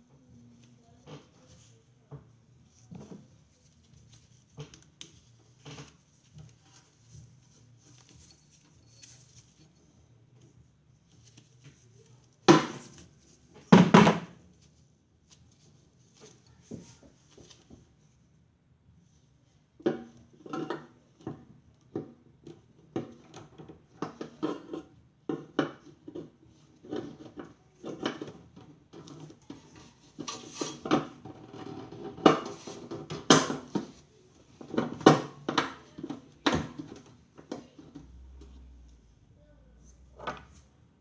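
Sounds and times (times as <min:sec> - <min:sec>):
clattering and knocking of tools: 0:04.6 - 0:09.9, 0:13.6 - 0:14.4.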